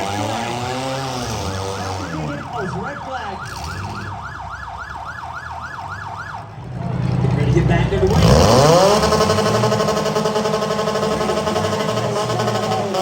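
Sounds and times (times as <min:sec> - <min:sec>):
electronic siren yelping: 0:00.0 - 0:06.5.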